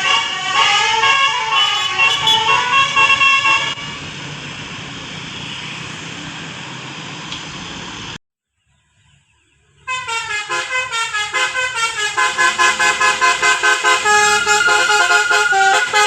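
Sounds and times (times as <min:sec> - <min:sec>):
bus horn playing a melody: 0:00.0 - 0:04.0, 0:09.9 - 0:16.0
vehicle engine and road noise: 0:00.0 - 0:16.0.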